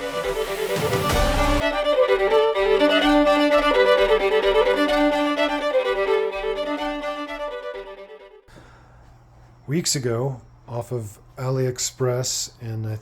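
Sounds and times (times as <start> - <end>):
fiddle melody over drone: 0.0 - 8.5.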